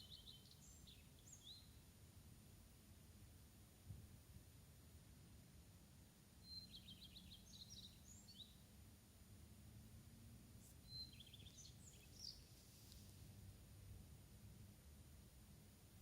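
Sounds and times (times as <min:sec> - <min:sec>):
bird singing trills and whistles: 0:00.0 - 0:01.8, 0:06.4 - 0:08.6, 0:10.8 - 0:12.5.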